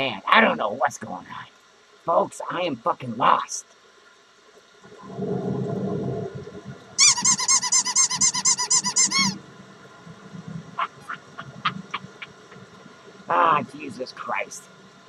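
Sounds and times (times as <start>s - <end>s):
low rumbling noise: 4.9s - 7.0s
rapid high-pitched squeaks: 7.0s - 9.4s.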